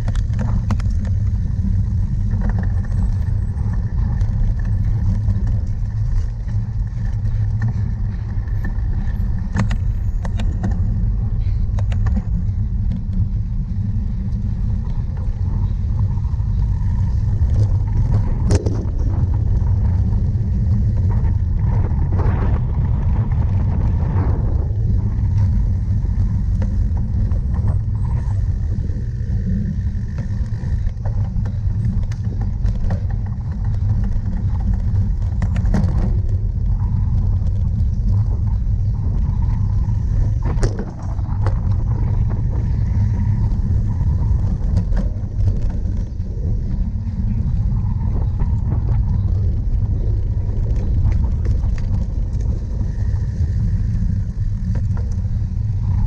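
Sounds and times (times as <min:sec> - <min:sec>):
bike clicks and rattles: 0:00.0 - 0:56.0
bike riding over rough ground: 0:00.0 - 0:56.0.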